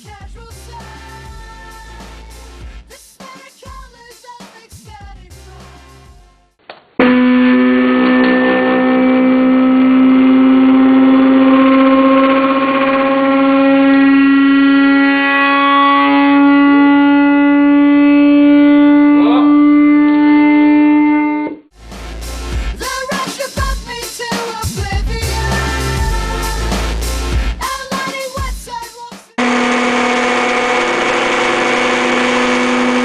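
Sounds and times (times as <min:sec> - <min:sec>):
subwoofer test tone rising in pitch: 0:07.0 - 0:22.8, 0:25.1 - 0:27.6, 0:29.4 - 0:33.0.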